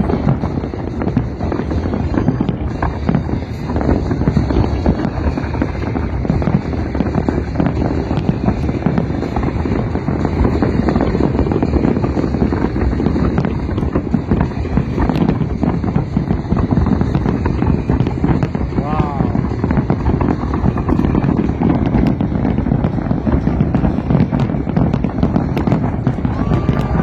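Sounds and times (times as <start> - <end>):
fireworks bangs and crackles: 0.0 - 27.0.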